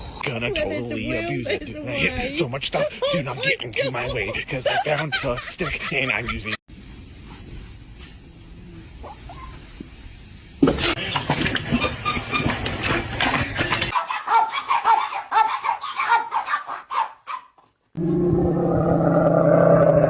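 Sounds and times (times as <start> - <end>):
person laughing: 2.0 - 6.6
clattering and knocking: 10.6 - 14.0
dog noises: 13.9 - 17.7.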